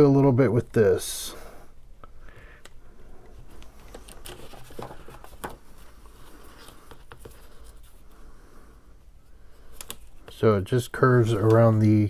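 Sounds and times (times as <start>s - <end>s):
paper rustling: 3.4s - 8.3s, 11.2s - 12.0s.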